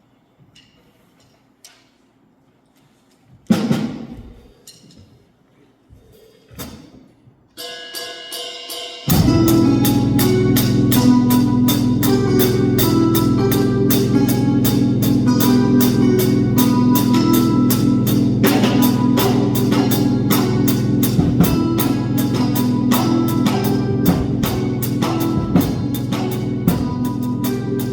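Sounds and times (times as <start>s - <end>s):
drum kit playing: 7.6s - 27.9s
electronic dance backing track: 9.1s - 27.9s.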